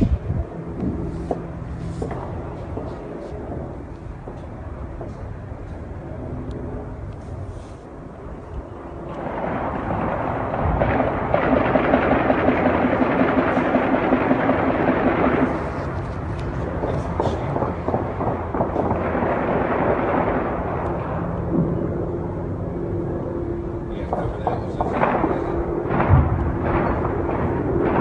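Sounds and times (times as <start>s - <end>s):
rapid overlapping bangs and crackles: 9.2s - 21.8s, 23.9s - 28.0s.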